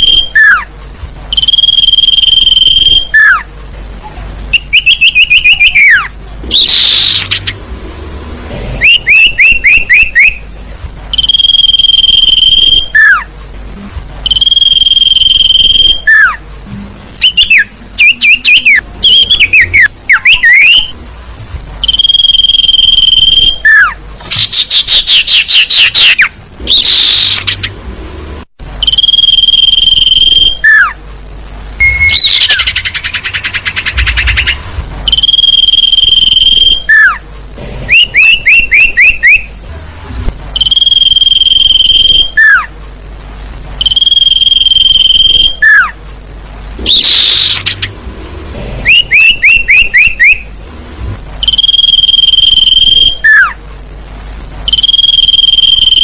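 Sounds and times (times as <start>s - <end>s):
high whistled bird calls: 0.0s - 0.7s, 1.3s - 3.5s, 4.5s - 7.6s, 8.8s - 13.3s, 14.2s - 16.4s, 17.2s - 21.0s, 21.8s - 27.7s, 28.8s - 31.0s, 31.8s - 37.2s, 37.9s - 39.6s, 40.6s - 42.7s, 43.8s - 46.0s, 46.9s - 47.9s, 48.8s - 50.6s, 51.4s - 53.6s
buzzy bird trills: 4.5s - 7.6s, 8.8s - 13.3s, 14.2s - 16.4s, 17.2s - 21.0s, 21.8s - 27.8s, 31.8s - 37.2s, 46.8s - 48.0s, 48.8s - 50.6s.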